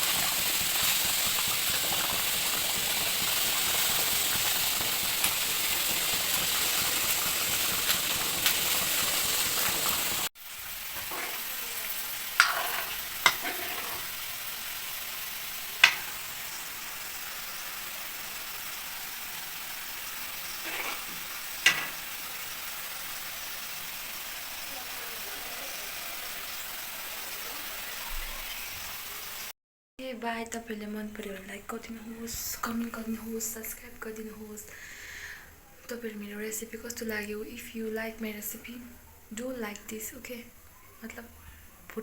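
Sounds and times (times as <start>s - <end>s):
curry sizzling in a pan: 0.0s - 29.5s.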